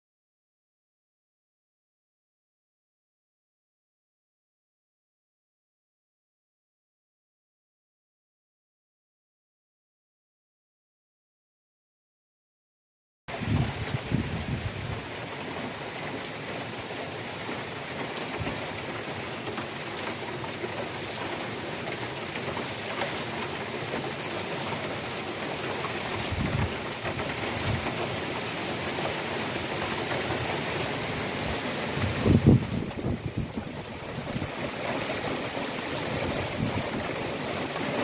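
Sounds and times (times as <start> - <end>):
heavy rain falling: 13.3 - 38.0
raindrops ticking on surfaces: 13.3 - 38.0.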